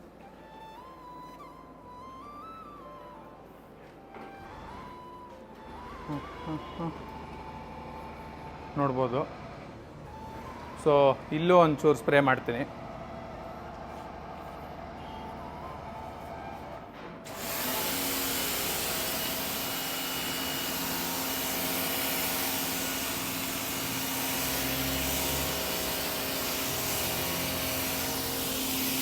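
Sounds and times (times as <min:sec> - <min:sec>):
pressure washer motor hum: 0:05.8 - 0:29.0
foam cannon spraying hiss: 0:17.3 - 0:29.0.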